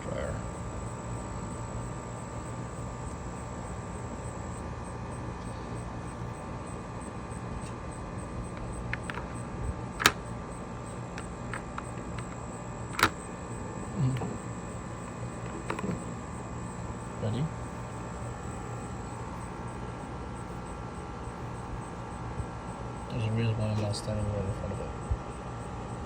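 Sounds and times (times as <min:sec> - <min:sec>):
outdoor background hum: 0:00.0 - 0:26.0
sharp clicks: 0:08.5 - 0:13.4.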